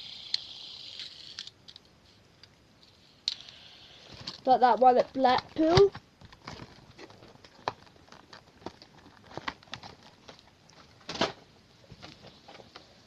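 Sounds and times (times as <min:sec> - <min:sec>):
plastic toys clicking and tapping: 0:04.3 - 0:06.4.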